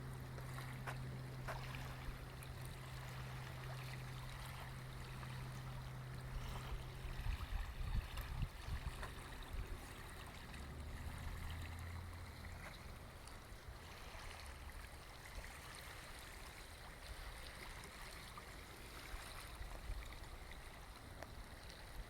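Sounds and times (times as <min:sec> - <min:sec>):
steady low hum: 0:00.0 - 0:17.4
waves lapping shoreline: 0:00.0 - 0:22.0.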